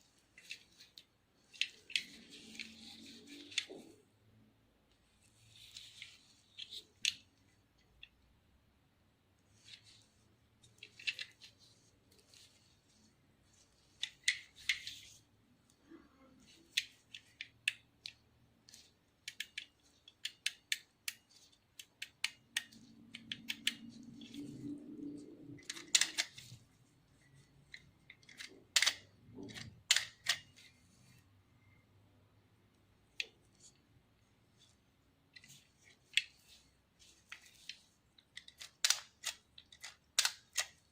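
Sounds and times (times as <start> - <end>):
camera mechanism clicks and snaps: 28.2 - 30.6.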